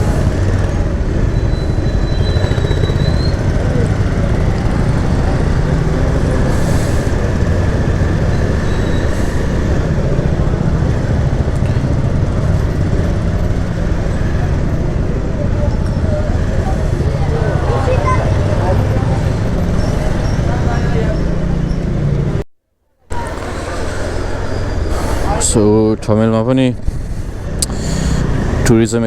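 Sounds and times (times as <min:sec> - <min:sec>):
motorbike engine running: 0:00.0 - 0:22.4
road and wind noise: 0:00.0 - 0:22.4, 0:23.1 - 0:29.0.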